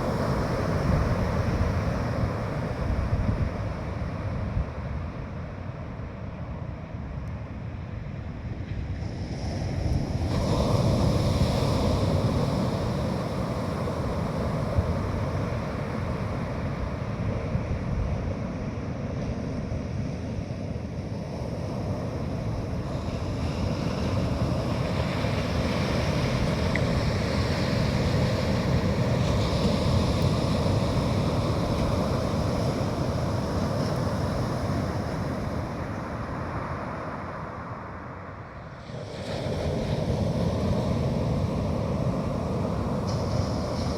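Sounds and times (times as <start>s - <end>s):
wind buffeting microphone: 0.0s - 6.4s, 22.0s - 43.9s
sea surf breaking on beach: 0.0s - 6.8s, 7.8s - 43.9s.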